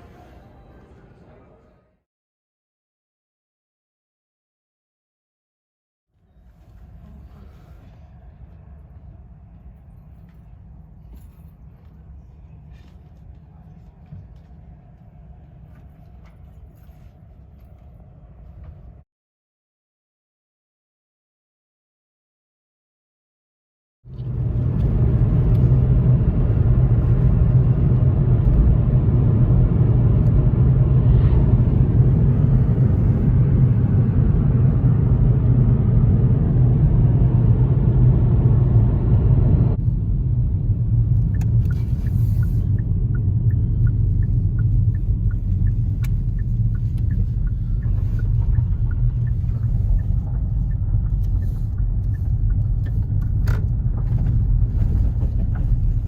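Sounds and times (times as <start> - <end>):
vehicle rumble from inside cabin: 6.2 - 19.0, 24.1 - 56.0.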